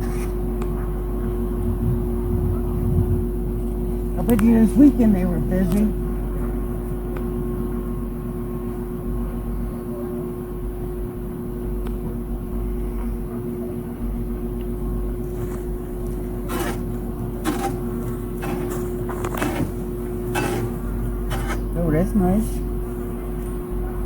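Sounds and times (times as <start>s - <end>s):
steady low hum: 0.0s - 24.0s
wind rumbling on microphone: 1.2s - 4.2s.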